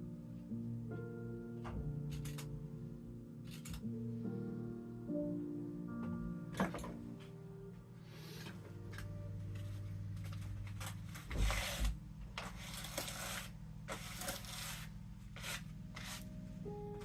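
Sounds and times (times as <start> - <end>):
rustles and scrapes: 10.3 - 16.3.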